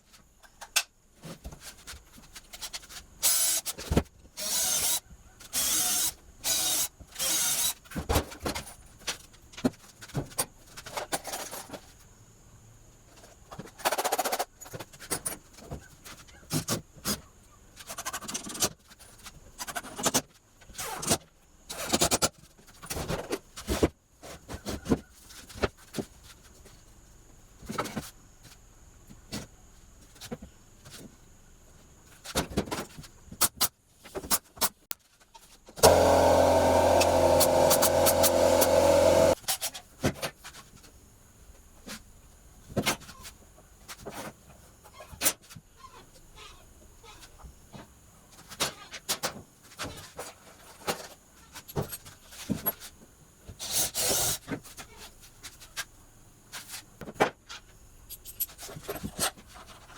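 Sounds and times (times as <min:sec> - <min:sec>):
short bursts of workshop noise: 0:03.2 - 0:03.7, 0:04.4 - 0:07.8, 0:35.8 - 0:39.4.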